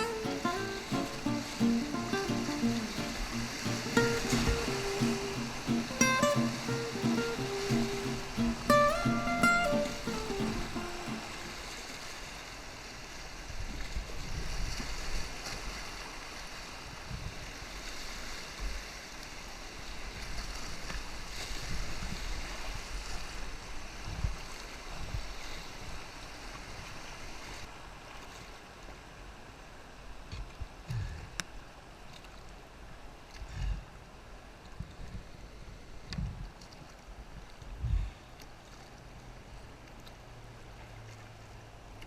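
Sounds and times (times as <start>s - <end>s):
river water rushing and splashing: 0.0s - 24.0s.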